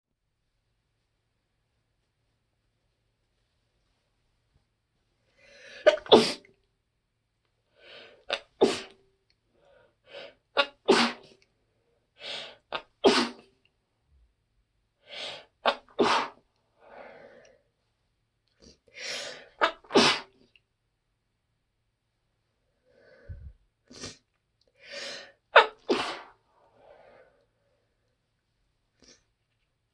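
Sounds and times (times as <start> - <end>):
woman sneezing: 8.3 - 8.9, 10.6 - 11.3, 13.1 - 13.4, 15.6 - 16.4, 19.6 - 20.3, 25.6 - 26.4.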